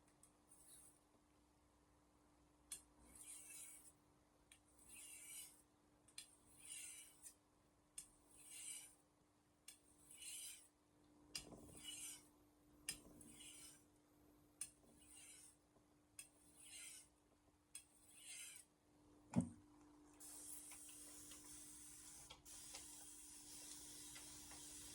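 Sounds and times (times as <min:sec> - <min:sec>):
knife scraping on whetstone: 0:03.1 - 0:03.9, 0:04.8 - 0:05.6, 0:06.5 - 0:07.3, 0:08.3 - 0:09.0, 0:10.0 - 0:10.7, 0:11.6 - 0:12.3, 0:13.2 - 0:13.8, 0:14.9 - 0:15.6, 0:16.3 - 0:17.1, 0:17.9 - 0:18.7.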